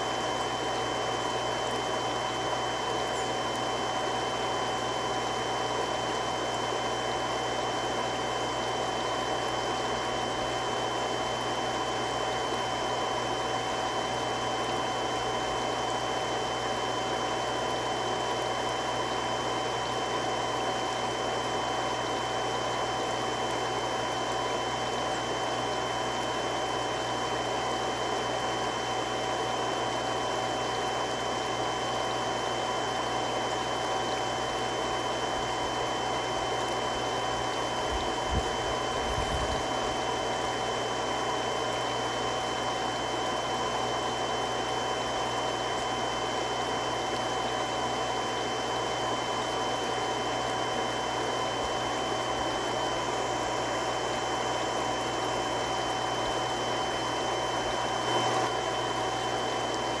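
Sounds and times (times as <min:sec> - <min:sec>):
water pump running: 0:00.0 - 1:00.0.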